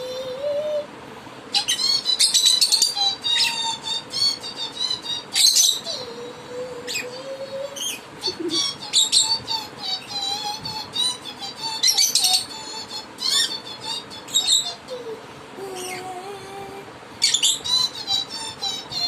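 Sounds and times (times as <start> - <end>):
low held tone: 0.0 - 0.9
lovebird chirping and twittering: 1.6 - 5.9, 7.8 - 9.4, 11.8 - 12.5, 17.2 - 18.7.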